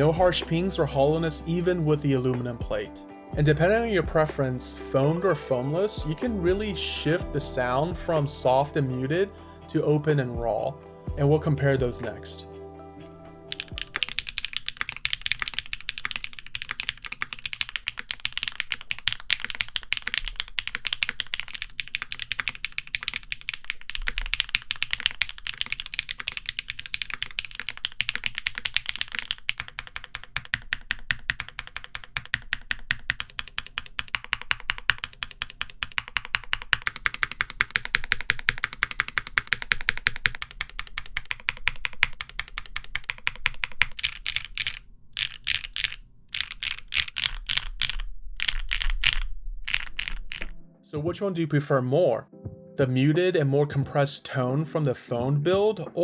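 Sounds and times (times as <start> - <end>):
mechanical keyboard typing: 13.5 - 50.6.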